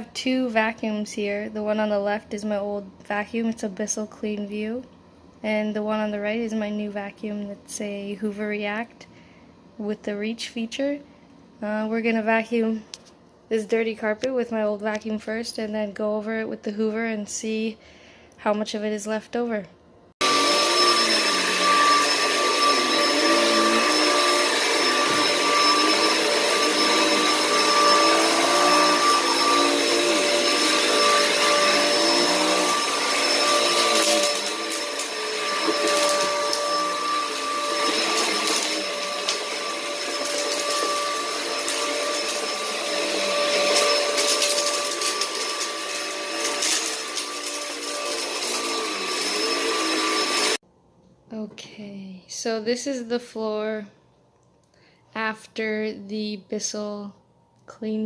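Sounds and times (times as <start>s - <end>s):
upright vacuum cleaner running: 20.2s - 50.6s.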